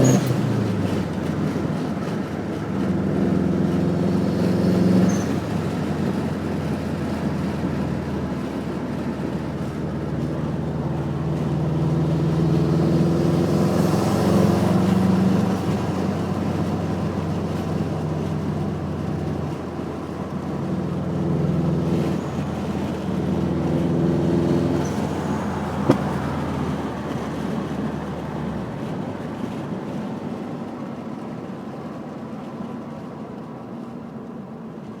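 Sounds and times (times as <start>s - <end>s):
car engine revving: 2.7s - 7.5s, 20.7s - 28.2s
exhaust backfire pop: 24.8s - 26.5s.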